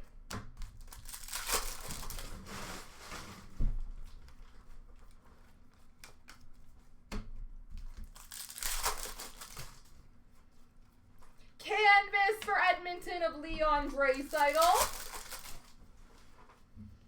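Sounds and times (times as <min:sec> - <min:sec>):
foil wrappers crinkling and tearing: 0:00.6 - 0:03.5, 0:07.9 - 0:10.0, 0:13.7 - 0:15.8.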